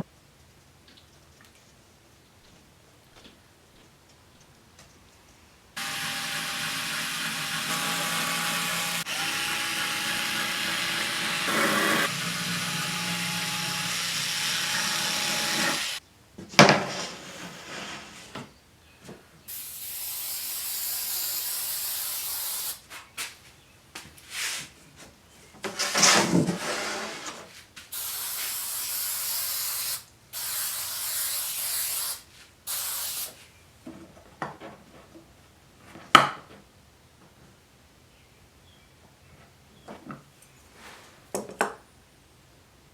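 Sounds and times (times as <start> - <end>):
power tool running: 5.8 - 16.0
high hissing bursts: 27.9 - 33.4.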